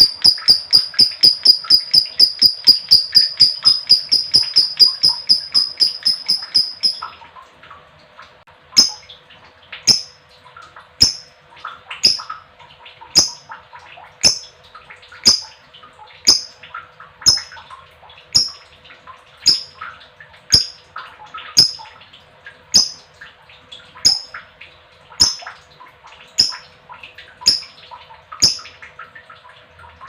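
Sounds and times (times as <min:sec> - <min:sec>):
lovebird chirping: 0:00.0 - 0:07.1.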